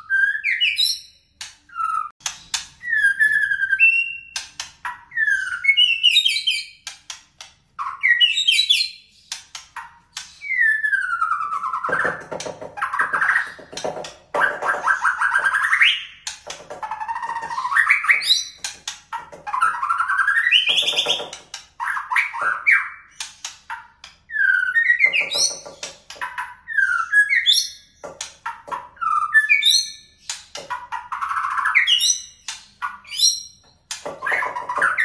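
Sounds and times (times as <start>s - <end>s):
bird singing whistled phrases: 10.4s - 11.9s.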